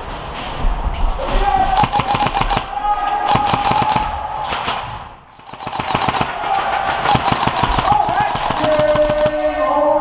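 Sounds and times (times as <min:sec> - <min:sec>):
airsoft guns firing bursts: 0:01.8 - 0:09.6.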